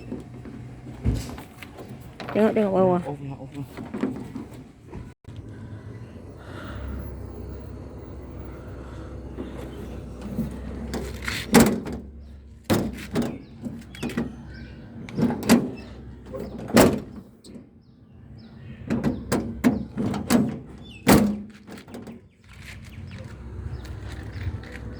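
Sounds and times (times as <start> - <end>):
car door banging shut: 10.2 - 17.7, 18.8 - 22.2.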